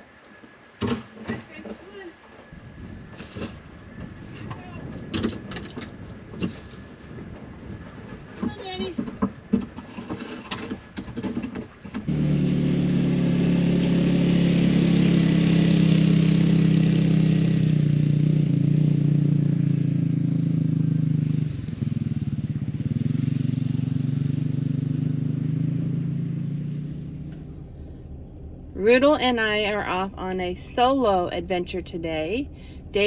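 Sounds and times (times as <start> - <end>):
vehicle engine running: 0.0 - 33.0.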